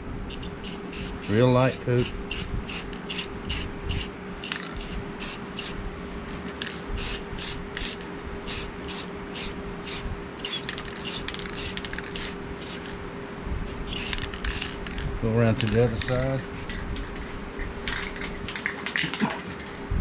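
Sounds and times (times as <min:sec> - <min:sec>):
aerosol spray can hissing: 0:00.3 - 0:05.8, 0:07.0 - 0:12.8, 0:14.0 - 0:14.8.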